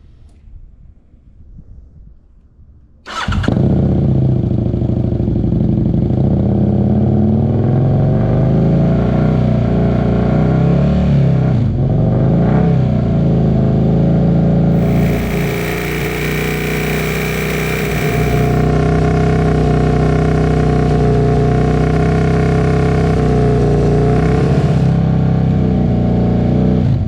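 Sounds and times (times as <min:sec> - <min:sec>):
motorcycle engine starting and idling: 0:14.7 - 0:18.8.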